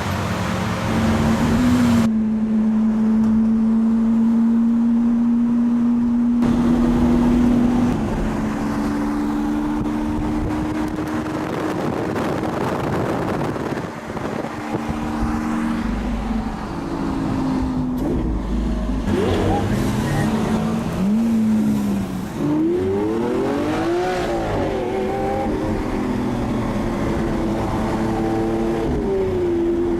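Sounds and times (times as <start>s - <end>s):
road and wind noise: 0.0s - 29.9s.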